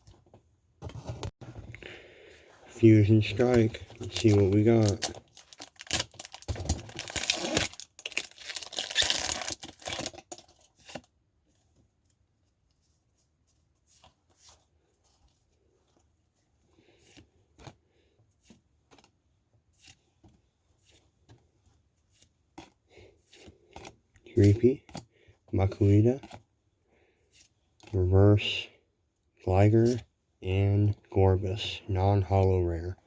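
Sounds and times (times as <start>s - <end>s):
foil wrapper tearing and crinkling: 4.0s - 10.4s.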